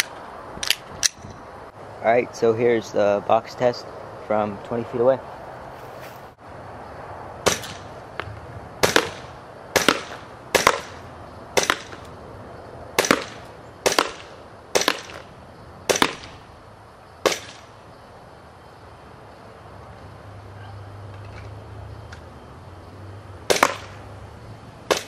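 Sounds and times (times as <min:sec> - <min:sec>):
airsoft pistol shots: 0:07.4 - 0:07.9, 0:08.8 - 0:11.0, 0:11.6 - 0:12.0, 0:13.0 - 0:15.3, 0:15.9 - 0:16.4, 0:17.2 - 0:17.7, 0:23.5 - 0:24.0.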